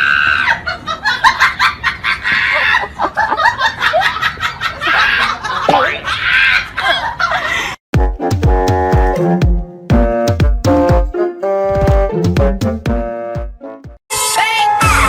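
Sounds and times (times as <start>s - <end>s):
person laughing hard: 0.3s - 7.8s.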